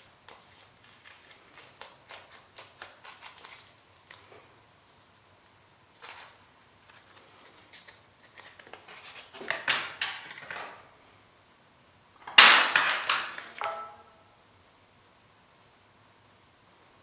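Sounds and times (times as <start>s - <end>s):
tape rustling and clicks: 0.1s - 4.3s, 5.4s - 10.8s
tool clattering on hard surface: 12.4s - 14.0s.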